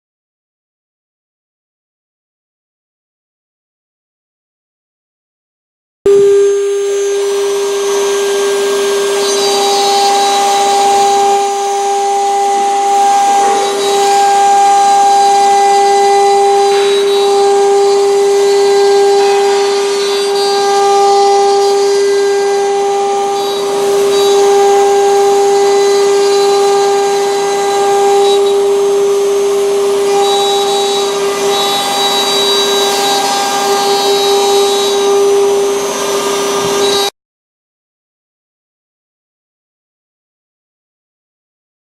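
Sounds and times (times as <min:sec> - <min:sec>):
router spindles whining: 0:06.1 - 0:37.1
wood cutting noise: 0:06.1 - 0:37.2.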